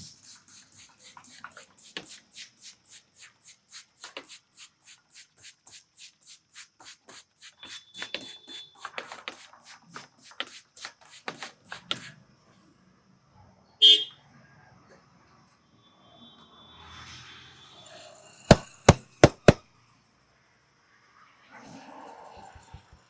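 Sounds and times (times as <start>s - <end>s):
hands rubbing hair: 18.5s - 19.6s.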